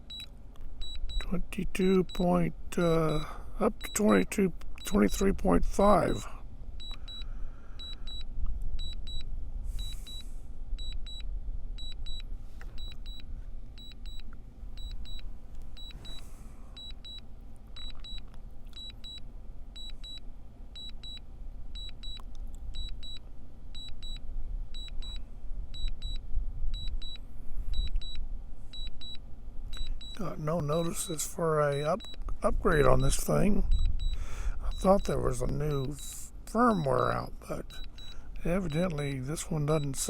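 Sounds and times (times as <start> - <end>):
remote controller double beep: 0.1 - 4.2, 9.8 - 10.2, 29.8 - 40.0
low rumble: 32.0 - 34.9.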